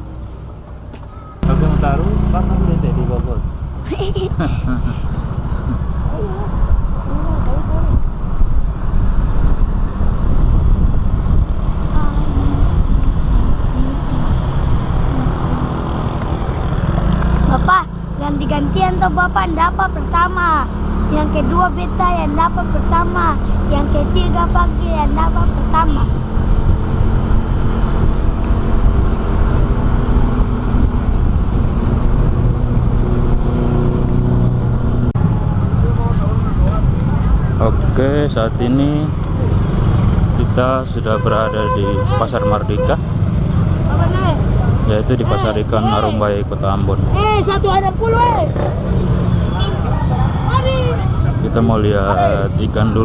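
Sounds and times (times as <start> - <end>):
vehicle road noise: 0.0 - 53.0
wind buffeting microphone: 5.0 - 17.7, 22.1 - 38.0.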